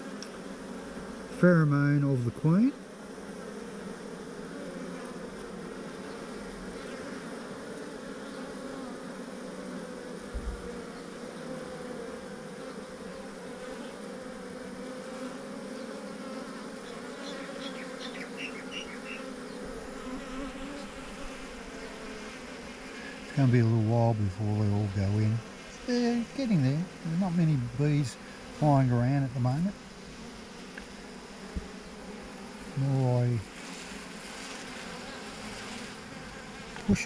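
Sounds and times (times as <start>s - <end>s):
bee swarm buzzing: 0.0s - 37.0s
soft thump: 10.3s - 10.7s.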